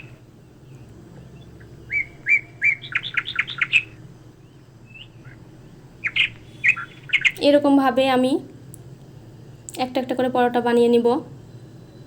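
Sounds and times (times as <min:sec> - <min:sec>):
small bird chirping: 0:00.0 - 0:07.5.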